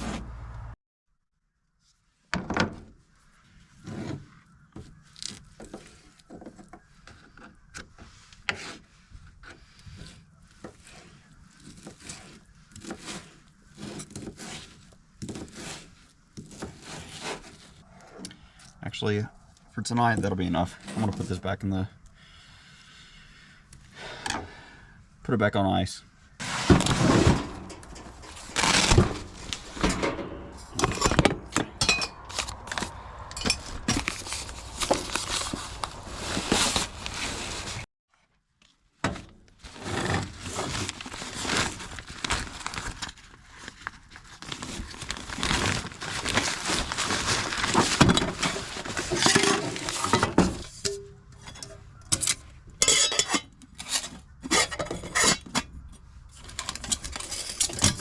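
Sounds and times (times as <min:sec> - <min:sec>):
metal cookware clattering: 0:50.2 - 0:53.5.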